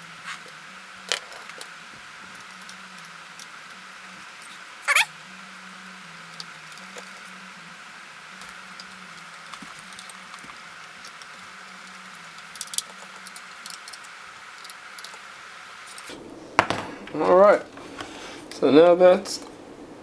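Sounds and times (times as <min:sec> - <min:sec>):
steady low hum: 0:00.0 - 0:20.0
small parts clicking and tapping: 0:00.4 - 0:03.8, 0:08.4 - 0:16.1.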